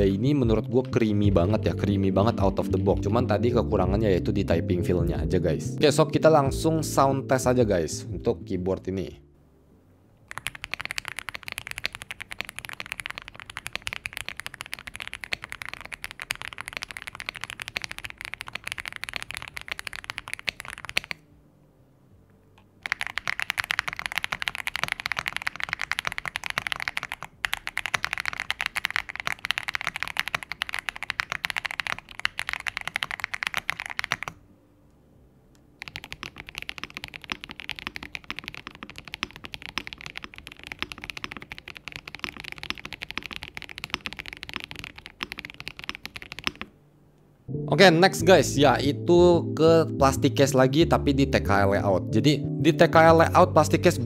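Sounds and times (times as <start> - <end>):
mechanical keyboard typing: 10.3 - 21.2, 22.8 - 34.4, 35.8 - 46.7.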